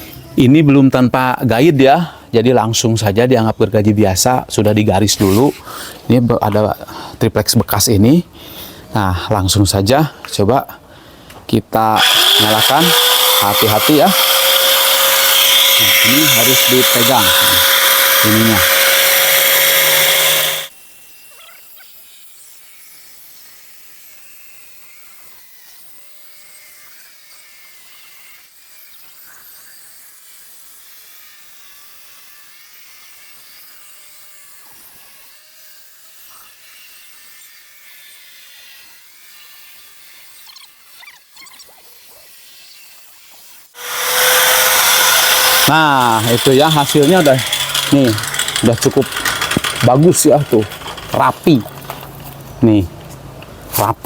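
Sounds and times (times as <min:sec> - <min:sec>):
circular saw whining: 0:11.9 - 0:30.6, 0:43.7 - 0:52.7
light scraping: 0:43.8 - 0:53.3.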